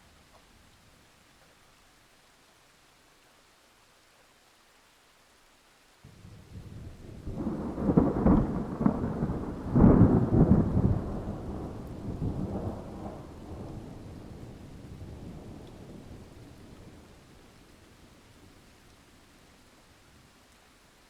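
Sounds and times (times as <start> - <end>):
thunder rumbling and cracking: 6.1 - 17.0.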